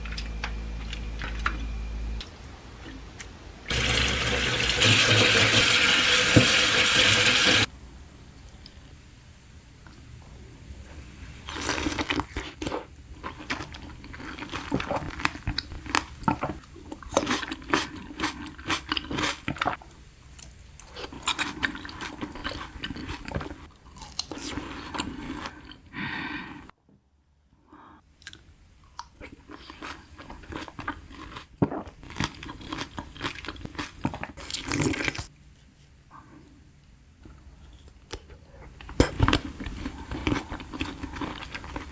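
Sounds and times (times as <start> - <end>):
chewing and crunching food: 11.5 - 25.9, 28.2 - 35.3, 37.6 - 41.9.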